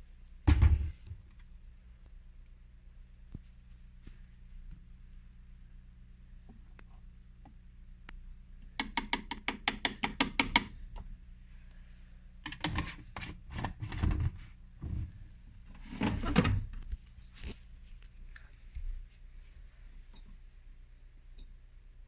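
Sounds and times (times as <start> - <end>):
washing machine humming: 0.4 - 2.0, 8.3 - 16.9
washing machine thumps and swishes: 0.5 - 1.2
washing machine clicks: 8.8 - 10.8.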